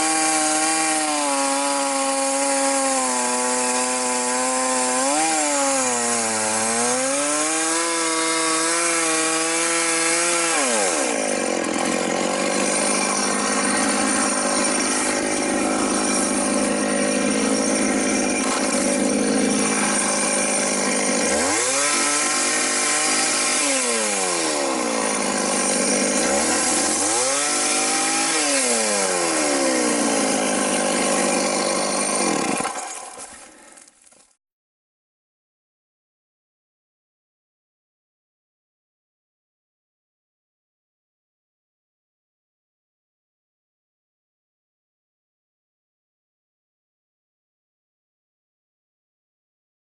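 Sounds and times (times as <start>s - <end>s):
chainsaw cutting a log: 0.0s - 34.4s.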